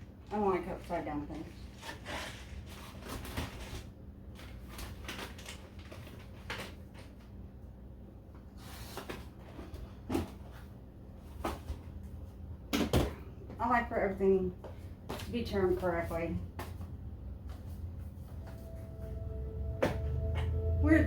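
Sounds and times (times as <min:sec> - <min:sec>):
faint steady hum: 0:00.0 - 0:21.0
packages knocking and rustling: 0:01.8 - 0:07.3.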